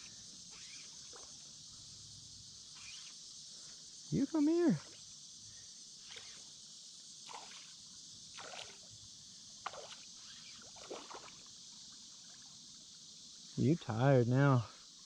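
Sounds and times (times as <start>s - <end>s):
high insect buzz: 0.0s - 15.0s
fish splashing in water: 7.2s - 8.9s, 9.6s - 11.4s.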